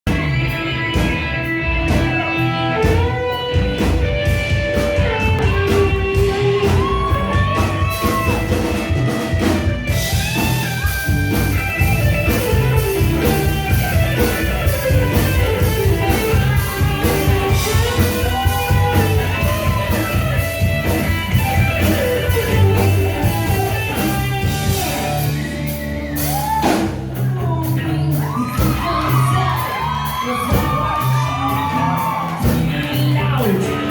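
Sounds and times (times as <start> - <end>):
drum kit beat: 0.1 - 33.9
electric guitar: 0.1 - 33.9.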